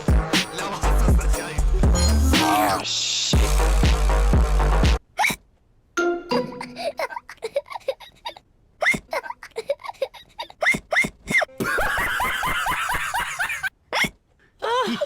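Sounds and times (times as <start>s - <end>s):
cartoon squeaky hiccups: 5.1s - 5.5s.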